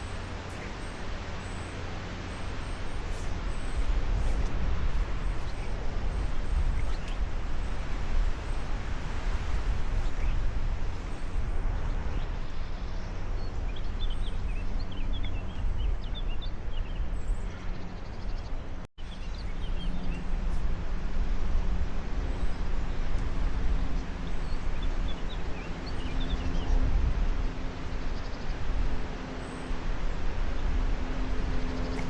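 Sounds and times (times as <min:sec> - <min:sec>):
small birds chirping: 0:00.0 - 0:08.6, 0:11.0 - 0:20.6, 0:22.3 - 0:26.9, 0:31.0 - 0:32.0
wind buffeting microphone: 0:00.0 - 0:32.0.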